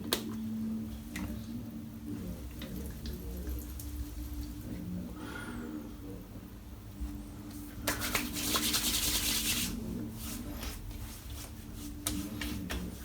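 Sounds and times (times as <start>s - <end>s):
hands rubbing: 7.5s - 13.0s.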